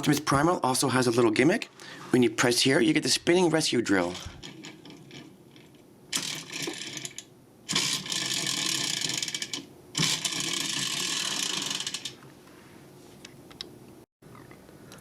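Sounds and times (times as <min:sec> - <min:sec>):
toy drill gears rattling: 0:04.0 - 0:12.2.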